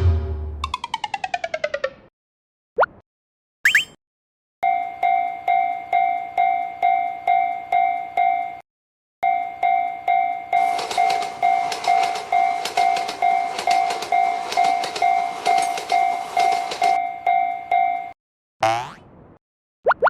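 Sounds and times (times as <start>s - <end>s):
railroad crossing bell ringing: 4.6s - 8.6s, 9.2s - 18.2s
sliding tone: 10.6s - 17.0s
train clattering over crossing: 10.6s - 17.0s.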